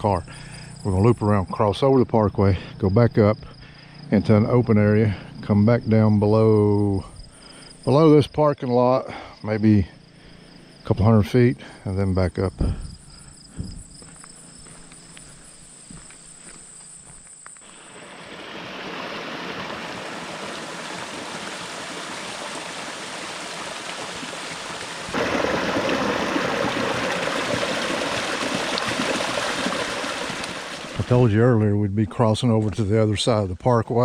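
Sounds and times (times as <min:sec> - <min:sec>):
crickets chirping: 0:00.0 - 0:34.0
rushing stream water: 0:17.7 - 0:31.3.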